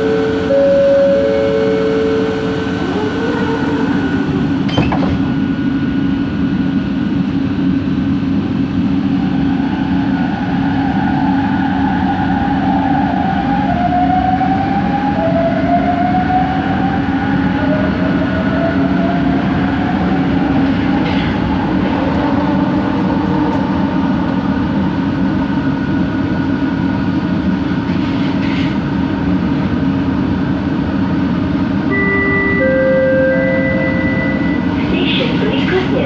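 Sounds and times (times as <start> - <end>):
train motor whine: 0.0 - 6.5, 31.7 - 36.0
train hum and rumble: 0.0 - 36.0
clean steady tones: 31.9 - 36.0.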